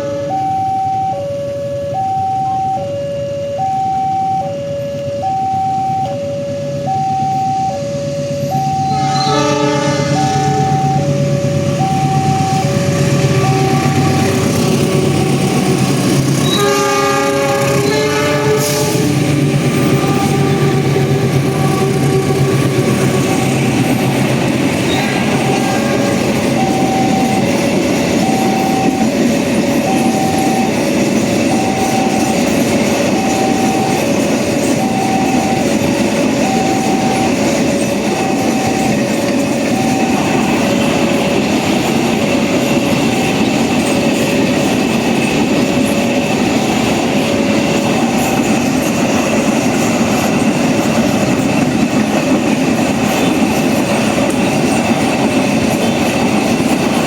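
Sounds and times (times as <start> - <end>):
train horn: 0.0 - 1.3, 6.1 - 23.5, 24.8 - 27.5
level-crossing two-tone alarm: 0.0 - 57.0
train rumble and wheel clatter: 0.0 - 57.0.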